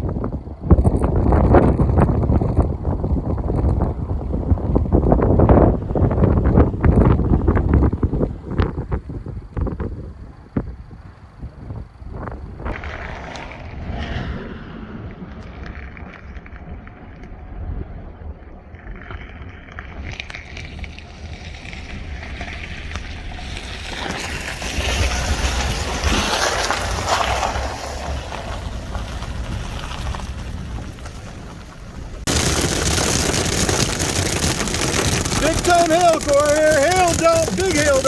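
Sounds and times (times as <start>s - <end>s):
wind: 0.0s - 38.0s
road and engine rumble: 20.4s - 38.0s
rain and hail hitting car: 20.7s - 38.0s.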